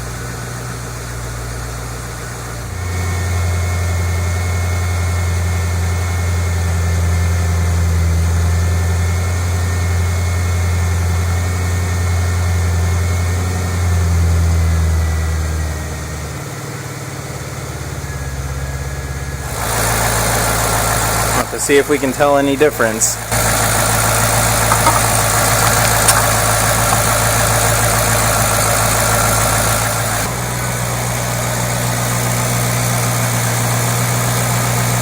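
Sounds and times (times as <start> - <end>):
car engine idling: 19.4 - 35.0.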